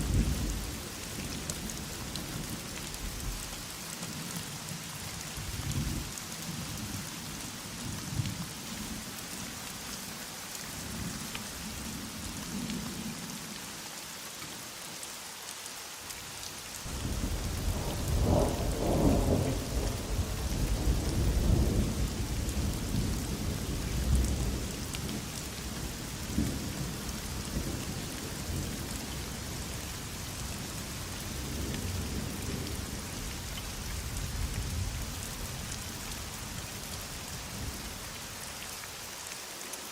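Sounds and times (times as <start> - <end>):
heavy rain hissing: 0.0 - 39.9
thunder rumbling: 16.9 - 25.2.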